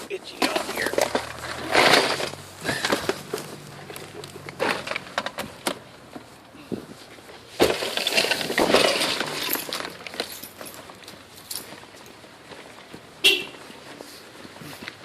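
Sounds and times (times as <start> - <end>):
box scraping and clattering: 0.4 - 3.6, 4.5 - 5.6, 7.5 - 10.9.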